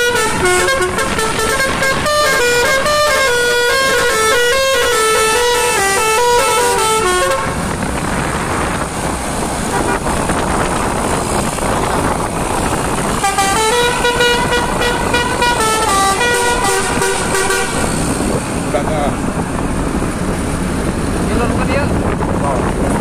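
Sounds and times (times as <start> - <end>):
multi-tone air horn melody: 0.0 - 7.6, 9.7 - 10.1, 13.2 - 18.0
broad rushing noise: 0.0 - 23.0.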